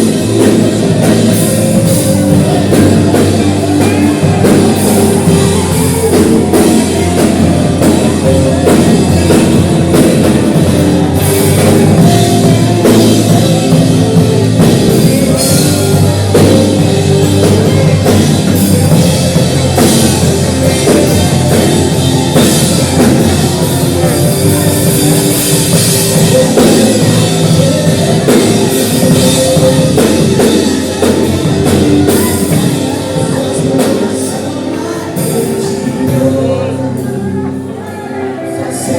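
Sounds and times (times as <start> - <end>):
drum kit: 0.0 - 38.9
guitar playing: 0.0 - 38.9
rock worship band music: 0.0 - 38.9.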